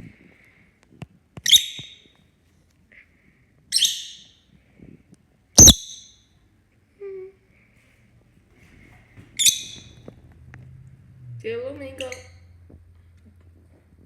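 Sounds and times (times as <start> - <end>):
bird high-pitched calls: 5.6 - 6.2.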